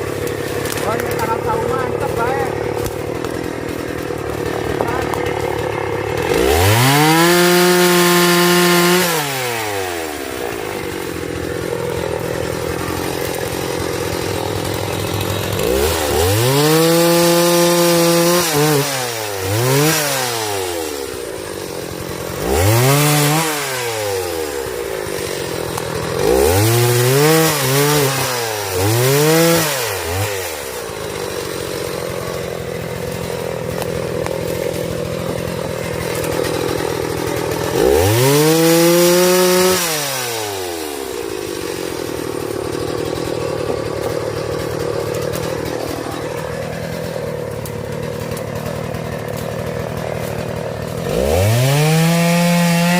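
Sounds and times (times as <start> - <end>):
chainsaw revving and idling: 0.0 - 52.9.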